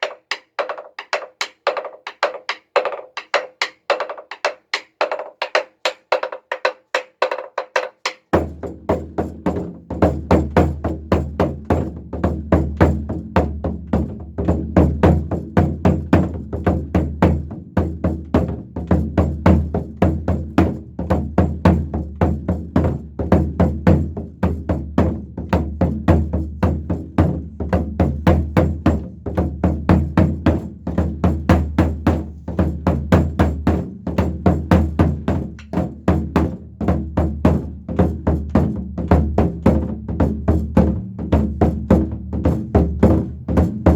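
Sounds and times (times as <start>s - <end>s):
drum struck with sticks: 0.0s - 13.5s.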